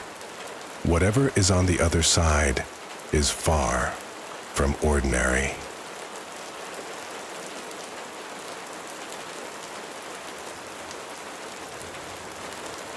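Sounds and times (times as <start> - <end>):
steady rain falling: 0.0 - 12.9.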